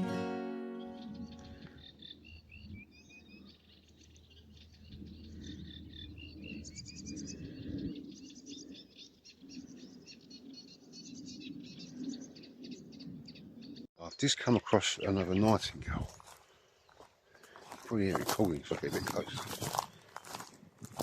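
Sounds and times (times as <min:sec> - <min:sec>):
nightingale singing: 0:00.0 - 0:15.8.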